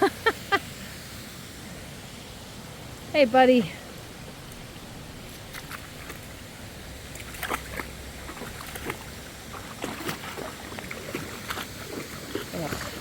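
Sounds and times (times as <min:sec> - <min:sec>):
flowing water rushing: 0:00.0 - 0:13.0
splashing in shallow water: 0:05.2 - 0:13.0.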